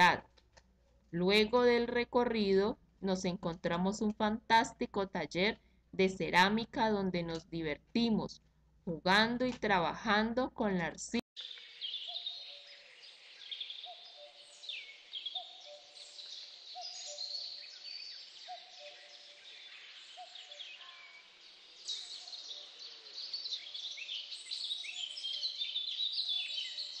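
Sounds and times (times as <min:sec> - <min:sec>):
birds chirping and calling: 0:10.8 - 0:27.0.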